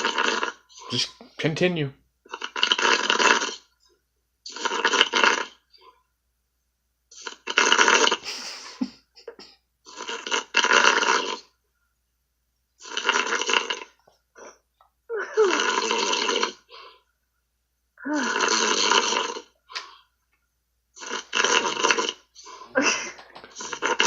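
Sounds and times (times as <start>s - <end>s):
man snoring heavily: 0.0s - 1.1s, 9.9s - 11.5s, 12.8s - 14.0s, 15.1s - 16.7s, 18.0s - 19.5s, 21.0s - 24.0s.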